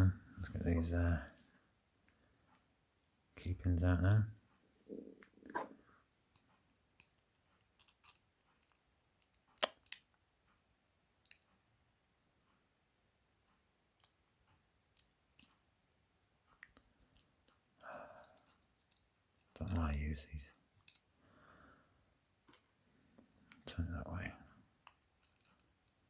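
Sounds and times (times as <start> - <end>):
small metallic clicks of tweezers: 7.8 - 10.1, 18.2 - 20.0.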